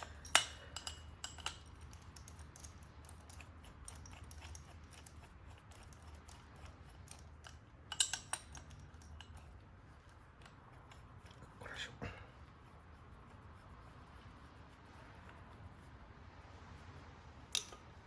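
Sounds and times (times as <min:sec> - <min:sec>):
hand tools clinking on metal: 0:00.0 - 0:09.5, 0:17.5 - 0:17.9.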